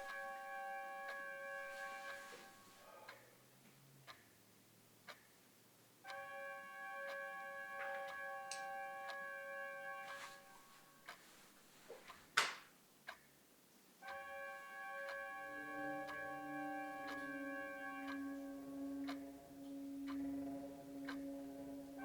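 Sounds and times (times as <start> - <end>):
sustained music chord: 0.0 - 2.8, 6.1 - 11.0, 14.1 - 22.0
clock ticking: 0.0 - 11.3, 12.0 - 22.0.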